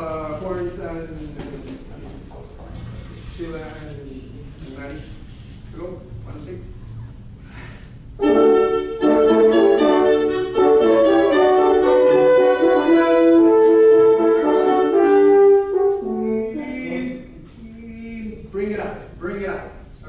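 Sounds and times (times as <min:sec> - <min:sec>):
french horns playing held notes: 0:08.2 - 0:17.4.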